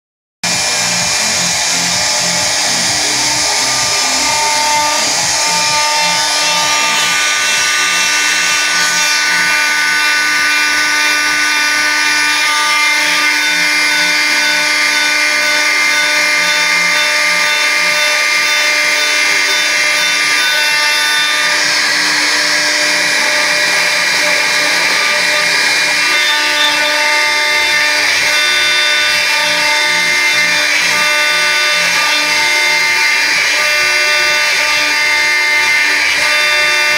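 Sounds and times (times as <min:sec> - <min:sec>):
router spindle running: 0:00.4 - 0:36.9
stepper motors whining: 0:00.4 - 0:36.9.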